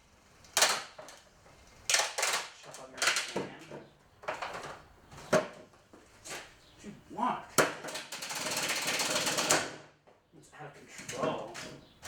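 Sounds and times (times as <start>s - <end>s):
plastic fan cracking under blows: 0.4s - 4.8s, 7.6s - 9.8s.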